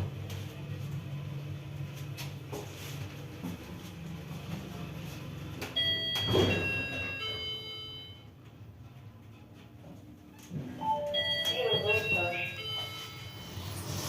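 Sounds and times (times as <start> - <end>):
elevator car humming: 0.0 - 14.0
electronic chime tones: 10.8 - 14.0.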